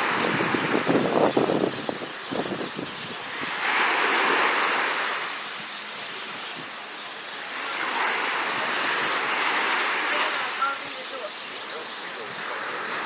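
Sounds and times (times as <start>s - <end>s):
sea waves washing onto beach: 0.0s - 13.0s.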